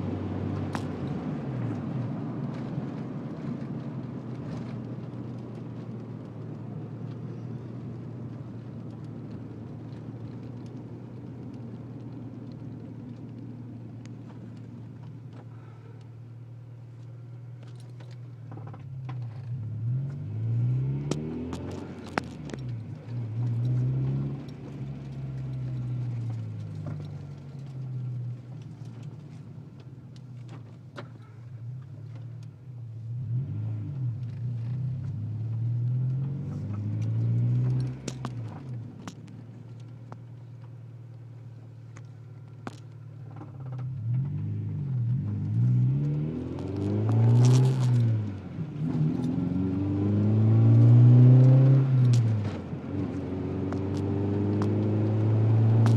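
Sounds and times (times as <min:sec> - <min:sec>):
car engine revving: 0:19.2 - 0:28.1, 0:42.7 - 0:55.9.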